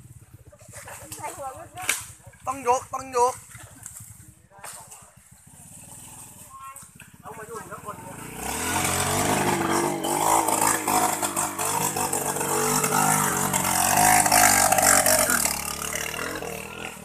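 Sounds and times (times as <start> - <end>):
vehicle engine revving: 7.2 - 17.0.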